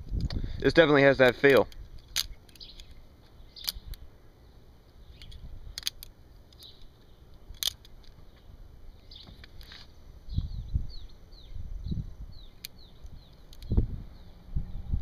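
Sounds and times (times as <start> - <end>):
butterfly knife metallic clicks: 3.6 - 4.0, 5.1 - 8.2, 12.5 - 13.8.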